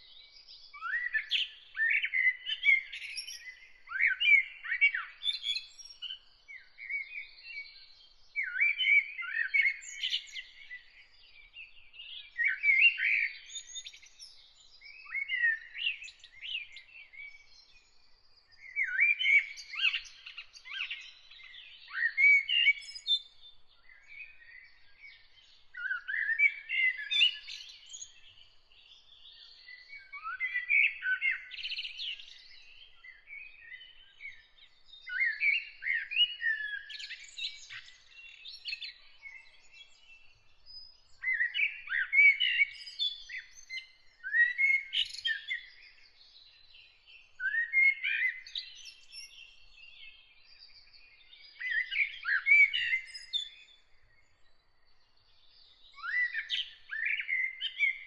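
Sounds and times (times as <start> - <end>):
songbird singing: 0.0 - 58.0.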